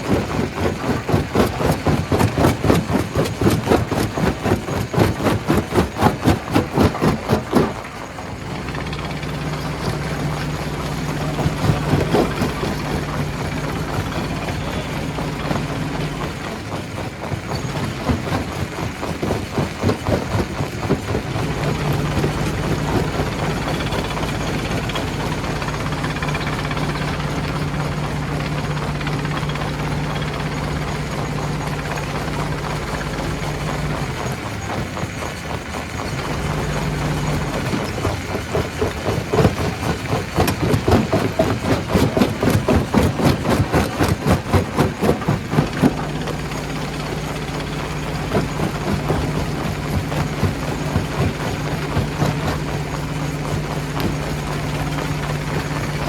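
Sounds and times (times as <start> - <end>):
rock knocks and clatter: 0.0 - 8.1, 9.4 - 25.2, 36.0 - 56.0
stone-crushing machinery hum: 0.0 - 56.0.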